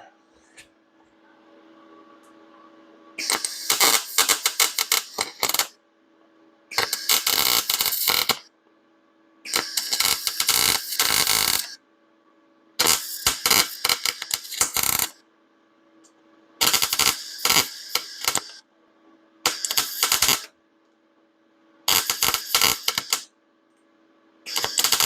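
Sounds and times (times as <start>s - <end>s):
faint steady hum: 0.0s - 25.0s
welder arc crackling: 3.2s - 5.7s, 6.7s - 8.5s, 9.5s - 11.8s, 12.8s - 15.2s, 16.6s - 18.6s, 19.4s - 20.5s, 21.9s - 23.3s, 24.5s - 25.0s.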